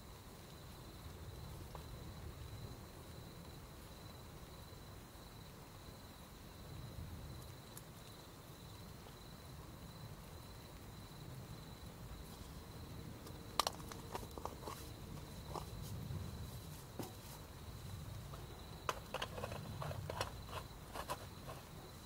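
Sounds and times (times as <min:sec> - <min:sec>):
crickets trilling: 0:00.0 - 0:22.0
sharp clicks and light knocks: 0:13.2 - 0:15.8, 0:18.3 - 0:21.7.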